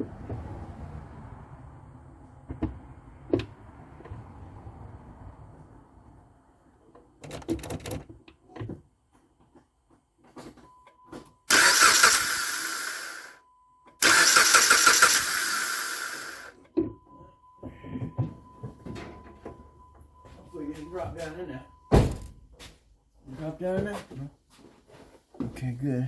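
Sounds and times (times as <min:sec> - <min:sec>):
car engine cranking: 0:11.5 - 0:13.4, 0:14.0 - 0:16.5.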